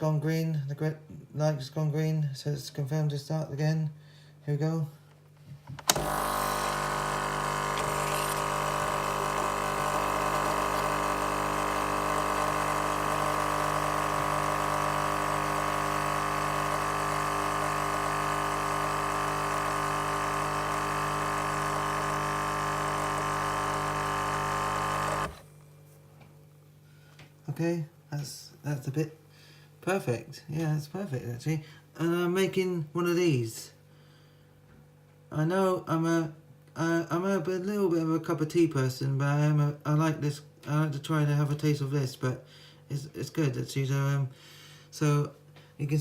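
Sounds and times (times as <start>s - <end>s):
coffee machine pump humming: 5.8s - 25.5s.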